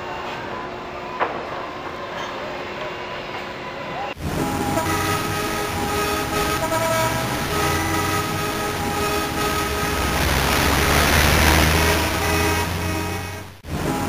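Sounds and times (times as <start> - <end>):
train horn tones: 4.2 - 13.6
train rumble: 4.2 - 14.0.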